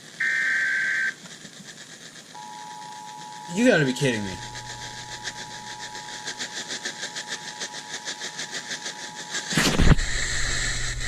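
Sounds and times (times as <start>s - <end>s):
broadcast hiss: 0.0s - 11.0s
fast pulsing buzz: 0.0s - 11.0s
loud burst of noise: 0.0s - 11.0s
two-tone alert alarm: 2.4s - 9.6s.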